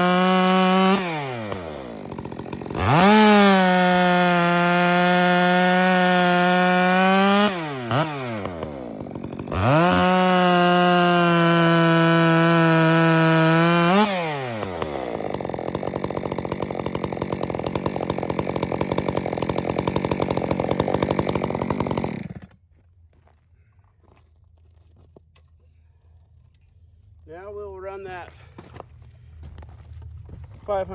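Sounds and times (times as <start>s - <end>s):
chainsaw revving: 0.0s - 22.6s.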